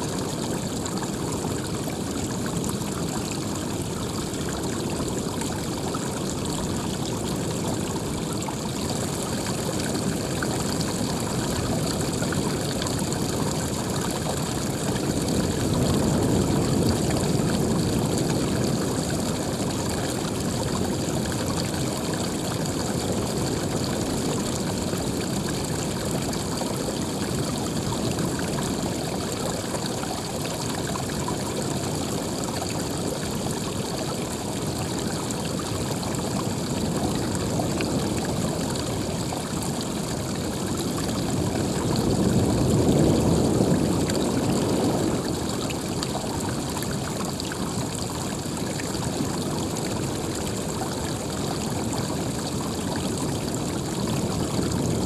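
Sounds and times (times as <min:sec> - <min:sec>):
running water: 0:00.0 - 0:55.0.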